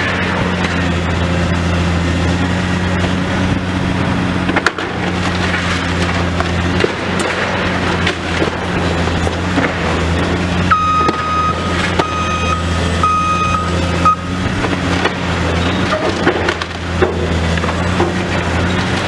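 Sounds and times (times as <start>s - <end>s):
debris cracking and crunching: 0.0s - 19.0s
diesel machinery running: 0.0s - 19.0s
reversing alarm beeps: 10.6s - 14.6s.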